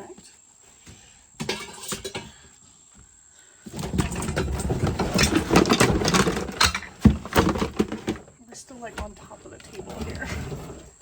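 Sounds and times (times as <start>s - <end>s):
items rummaged and rustling: 3.6s - 11.0s.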